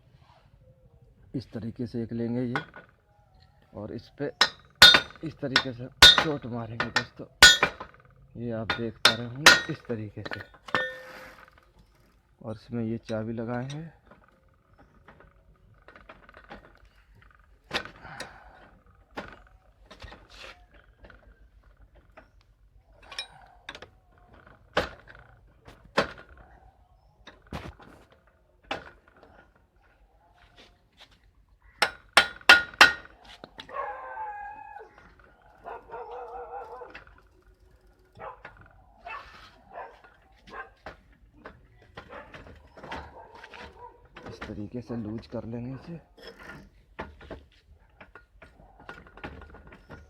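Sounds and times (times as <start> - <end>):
metallic clicks and knocks: 4.3 - 11.9, 31.8 - 33.8, 46.2 - 50.0
spanner strikes on metal: 4.4 - 8.0, 8.7 - 11.3, 31.8 - 33.1.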